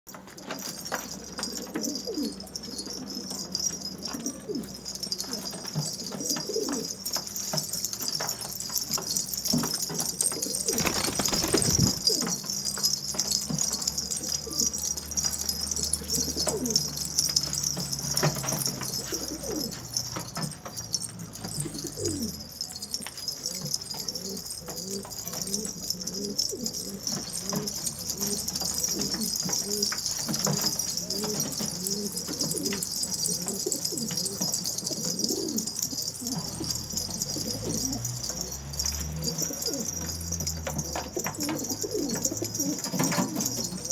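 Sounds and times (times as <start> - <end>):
pigeons cooing: 0.4 - 7.9, 8.8 - 12.6, 14.0 - 20.5, 21.4 - 43.9
wings flapping: 10.4 - 12.4.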